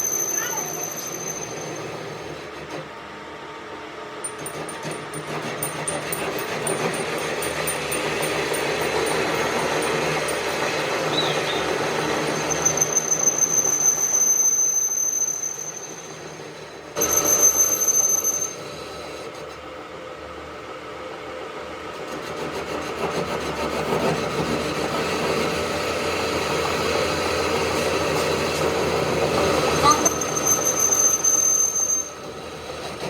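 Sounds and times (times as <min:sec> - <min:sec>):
high-pitched cutting tool squeal: 0:00.0 - 0:02.7, 0:04.3 - 0:19.4, 0:27.7 - 0:33.0
lathe grinding metal: 0:04.2 - 0:19.5, 0:23.2 - 0:33.0.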